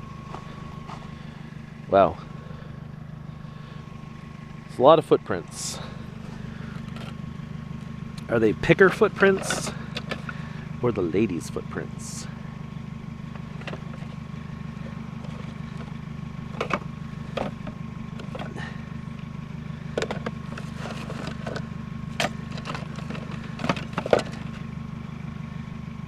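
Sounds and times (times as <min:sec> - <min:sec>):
vehicle engine idling: 0:00.0 - 0:26.0
junk clunking and knocking: 0:05.5 - 0:10.8, 0:12.2 - 0:25.1.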